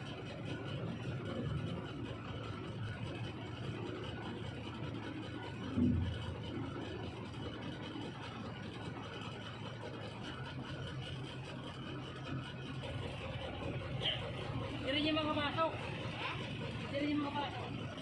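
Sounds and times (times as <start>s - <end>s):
truck engine idling: 0.0s - 18.0s
short low thud: 5.8s - 6.2s.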